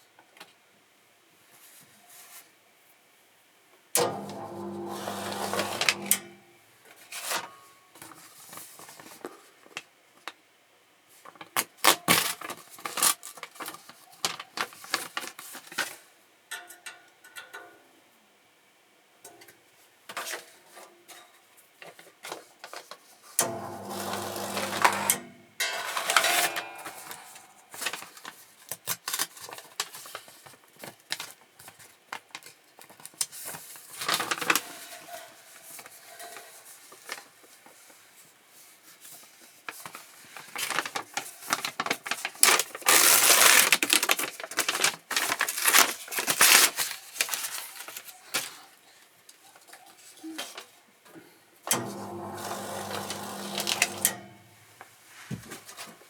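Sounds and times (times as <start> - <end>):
paper rustling: 25.9 - 48.7.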